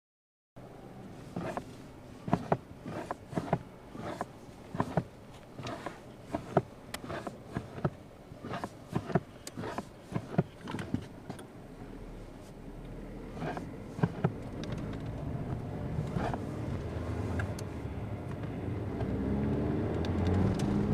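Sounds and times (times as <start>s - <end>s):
low car running sound: 0.6s - 20.9s
car clicking knocks: 2.3s - 11.4s, 13.4s - 16.4s.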